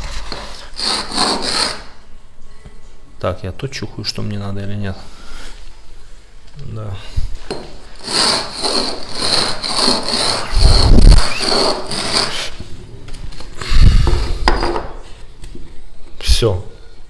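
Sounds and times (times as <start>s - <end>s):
stone tile scraping on abrasive: 0.0s - 2.0s, 7.9s - 12.6s.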